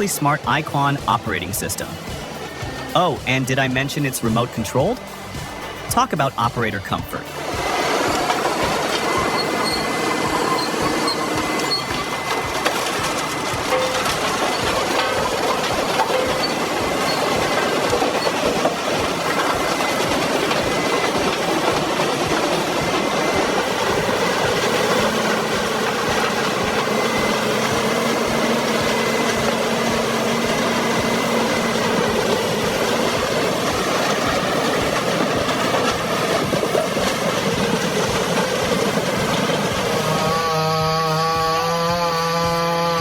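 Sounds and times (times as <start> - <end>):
heavy machinery rattling: 0.0 - 43.0.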